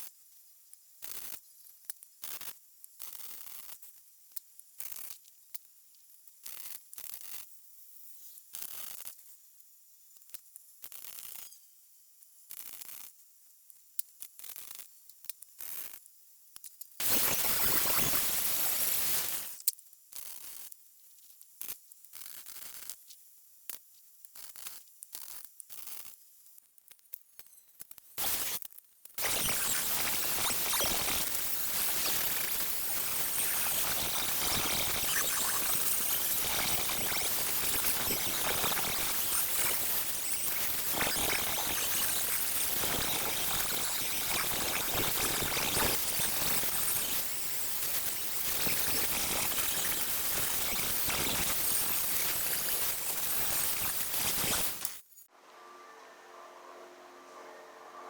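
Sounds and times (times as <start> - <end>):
power tool hissing on sheet metal: 17.0 - 19.6, 29.2 - 58.0.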